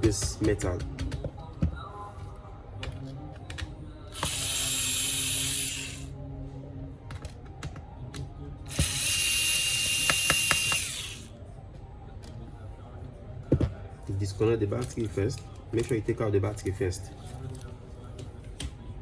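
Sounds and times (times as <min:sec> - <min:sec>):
electric screwdriver whirring: 0:04.2 - 0:06.1, 0:08.7 - 0:11.3.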